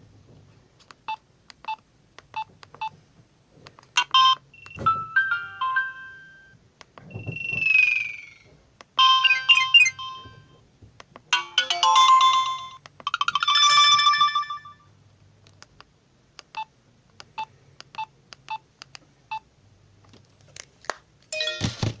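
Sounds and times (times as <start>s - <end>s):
phone message alert melody: 4.6s - 6.5s, 9.0s - 10.5s.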